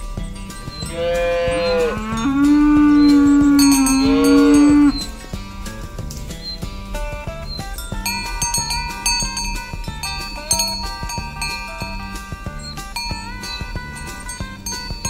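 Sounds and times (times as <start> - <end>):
background music with steady beat: 0.0 - 15.0
cow mooing: 0.7 - 5.1.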